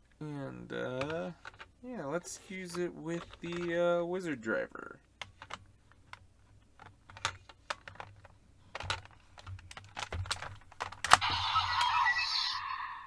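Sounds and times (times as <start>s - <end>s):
plastic toy parts clicking: 0.8s - 4.0s, 5.0s - 12.1s
sharp plastic snap: 6.8s - 11.3s
toy belt electronic sound effect: 11.1s - 13.0s.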